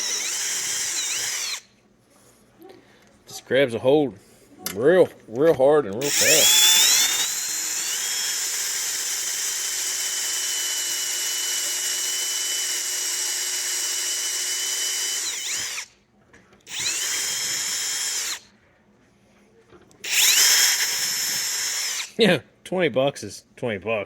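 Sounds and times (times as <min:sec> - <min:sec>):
electric drill boring metal: 0:00.0 - 0:01.6, 0:06.0 - 0:15.9, 0:16.7 - 0:18.4, 0:20.0 - 0:22.2.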